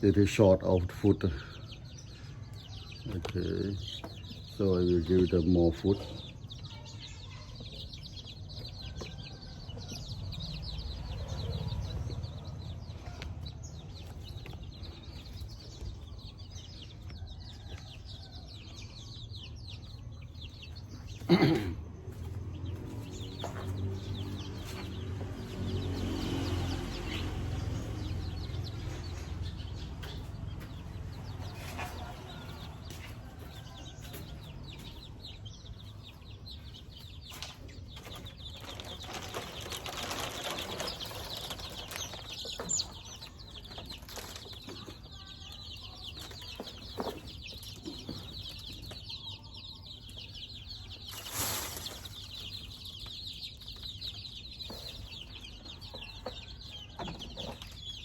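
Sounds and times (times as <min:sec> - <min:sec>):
chicks peeping and clucking: 0:00.0 - 0:58.0
wings flapping: 0:38.3 - 0:42.9.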